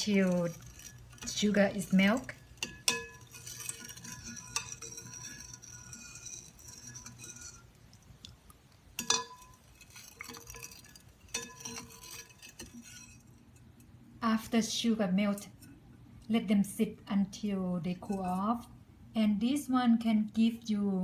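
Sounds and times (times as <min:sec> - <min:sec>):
spoon stirring in a bowl: 0:00.0 - 0:14.0, 0:17.9 - 0:18.7
spoon clinking against bowl: 0:02.2 - 0:07.4, 0:09.0 - 0:09.6.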